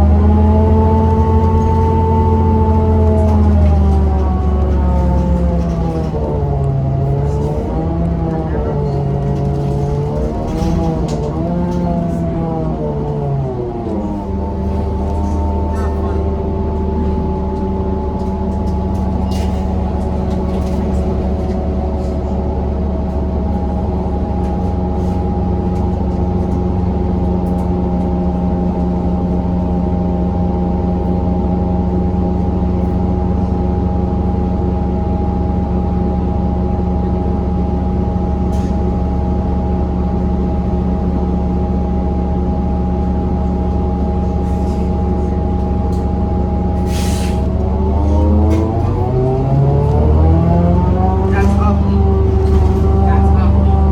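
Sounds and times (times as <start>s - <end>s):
bus diesel engine drone: 0.0s - 53.9s.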